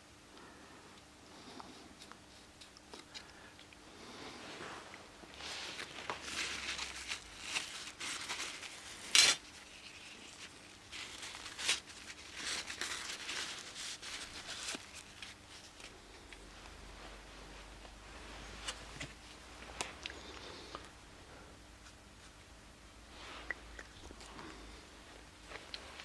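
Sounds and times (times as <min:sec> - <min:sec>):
rustling and scraping: 0:04.3 - 0:20.0.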